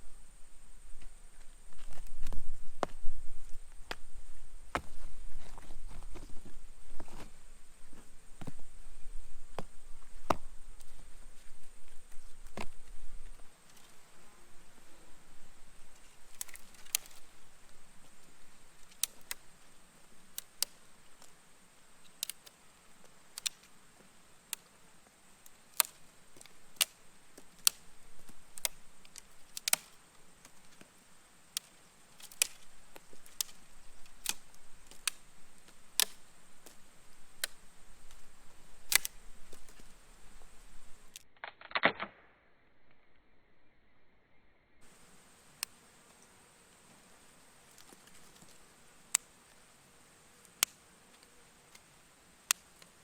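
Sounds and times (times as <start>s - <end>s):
faint high hiss: 0.0s - 41.2s, 44.7s - 53.0s
campfire crackling and popping: 16.2s - 17.4s, 23.3s - 23.7s, 25.4s - 30.8s, 31.5s - 41.8s, 50.5s - 50.8s.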